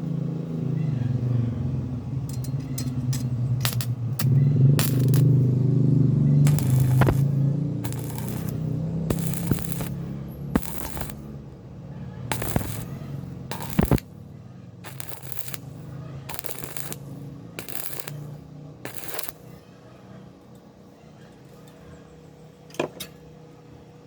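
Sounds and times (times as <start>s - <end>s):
welder low hum: 1.2s - 19.6s
arc welding crackling bursts: 3.6s - 11.6s, 12.3s - 19.6s.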